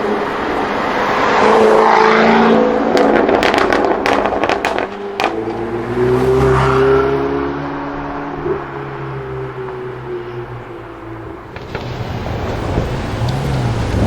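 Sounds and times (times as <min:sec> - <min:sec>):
car exhaust accelerating hard: 0:00.3 - 0:14.0
exhaust crackles and pops: 0:02.8 - 0:05.7, 0:11.2 - 0:14.0.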